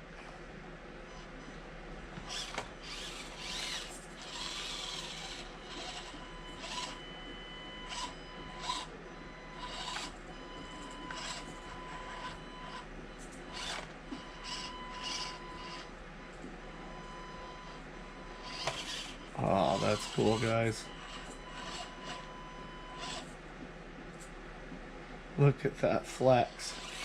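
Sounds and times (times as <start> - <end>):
small electric motor whirring: 2.2 - 7.0, 7.7 - 8.9, 9.5 - 12.8, 13.5 - 15.9, 18.4 - 23.4, 26.5 - 27.0
faint steady high tone: 2.4 - 23.3.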